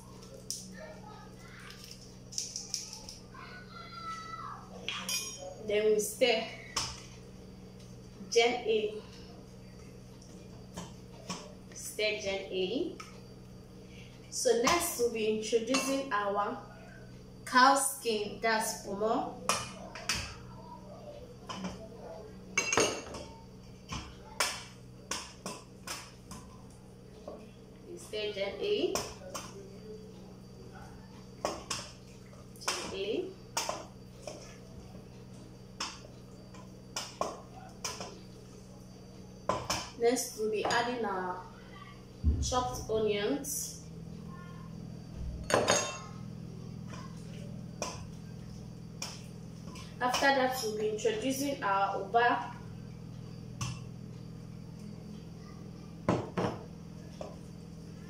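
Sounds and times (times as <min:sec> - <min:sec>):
low steady hum: 0:00.0 - 0:58.0
metal spoon clinking on pot: 0:04.9 - 0:05.5.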